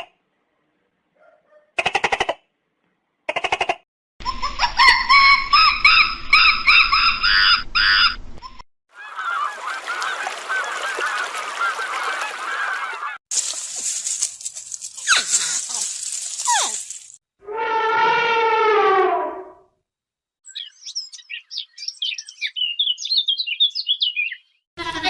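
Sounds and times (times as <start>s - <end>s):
chorus of animal calls: 9.0s - 13.2s.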